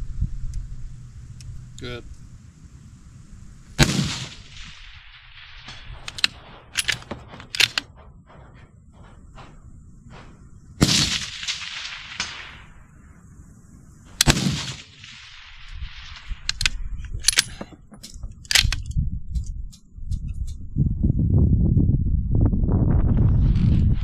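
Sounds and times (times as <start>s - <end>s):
rifle shots with rolling echo: 3.8s - 17.6s
sharp clicks and knocks: 5.6s - 10.6s, 16.4s - 20.6s.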